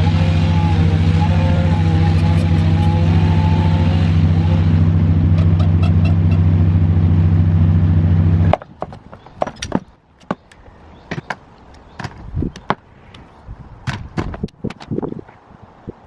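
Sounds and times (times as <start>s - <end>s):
loud low mechanical drone: 0.0s - 8.7s.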